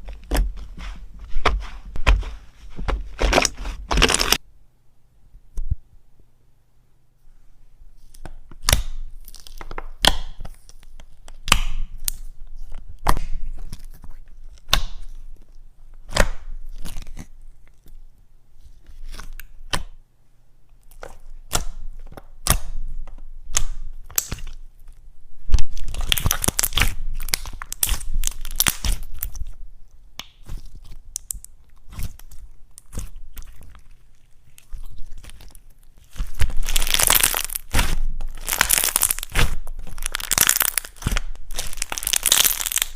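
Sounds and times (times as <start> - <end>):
slime squishing and popping: 3.2 - 4.4, 8.6 - 10.7, 11.3 - 12.3, 20.9 - 24.9, 25.5 - 29.6, 30.2 - 42.9.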